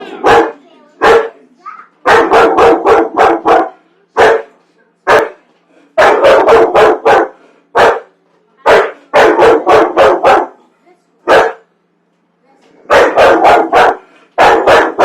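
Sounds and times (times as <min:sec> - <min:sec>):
dog barking loudly: 0:00.1 - 0:01.4, 0:02.0 - 0:04.5, 0:05.1 - 0:05.4, 0:06.0 - 0:08.1, 0:08.7 - 0:10.6, 0:11.3 - 0:11.7, 0:12.9 - 0:15.0.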